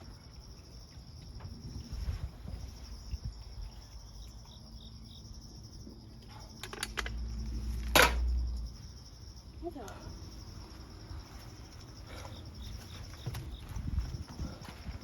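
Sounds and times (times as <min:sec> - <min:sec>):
insects buzzing: 0:00.0 - 0:15.0.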